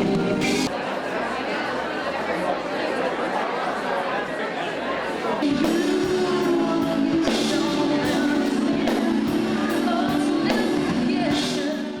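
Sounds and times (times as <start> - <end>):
music with beat and vocals: 5.4 - 12.0.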